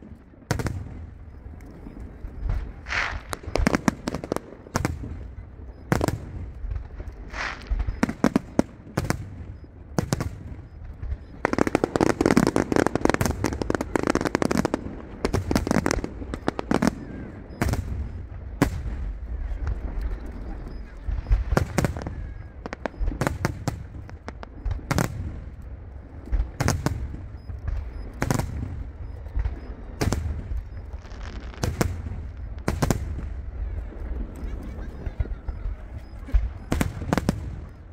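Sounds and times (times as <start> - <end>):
fireworks bangs: 0.0 - 37.9
fireworks crackling: 0.0 - 37.9.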